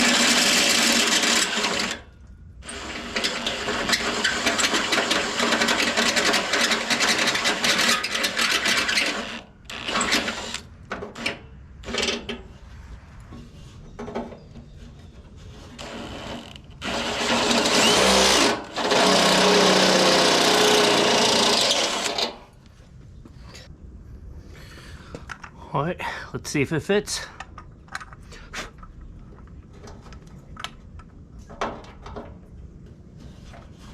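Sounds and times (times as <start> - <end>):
electric drill boring sheet metal: 0.0 - 2.0, 2.6 - 10.6, 15.8 - 22.4.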